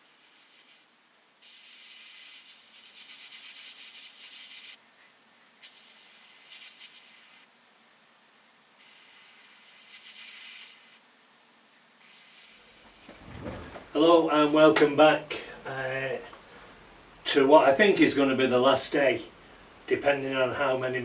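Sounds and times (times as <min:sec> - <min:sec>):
airbrush hissing: 0:00.0 - 0:04.8.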